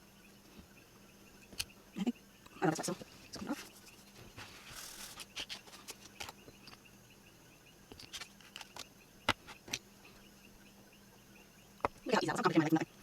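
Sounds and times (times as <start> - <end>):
faint rapid chirping: 0.0 - 13.0
faint steady hum: 0.0 - 13.0
small tools and bottles clicking: 4.7 - 6.8, 7.9 - 9.8.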